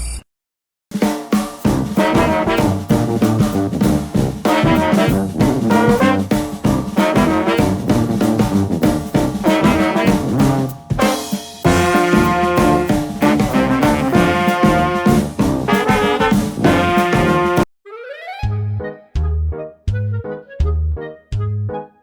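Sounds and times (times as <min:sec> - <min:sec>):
upbeat jazzy music: 0:01.0 - 0:17.7.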